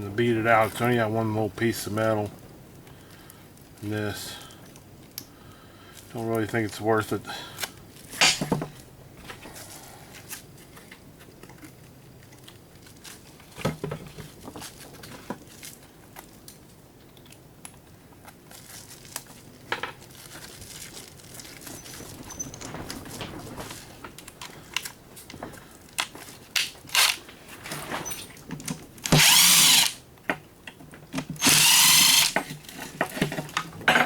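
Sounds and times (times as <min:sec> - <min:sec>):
light clicks and rustling: 0:07.6 - 0:29.1
plastic and metal parts rattling: 0:08.2 - 0:08.8, 0:18.8 - 0:30.0.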